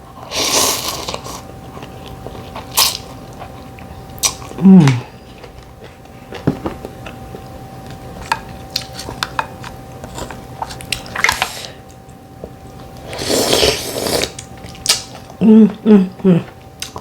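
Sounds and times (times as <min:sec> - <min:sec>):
faint steady hum: 0:00.0 - 0:17.0
chewing and wet mouth sounds: 0:01.1 - 0:12.0.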